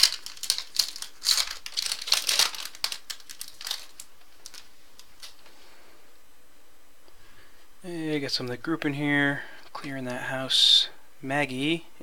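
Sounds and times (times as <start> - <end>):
wrapper tearing and crinkling: 0.0 - 5.5.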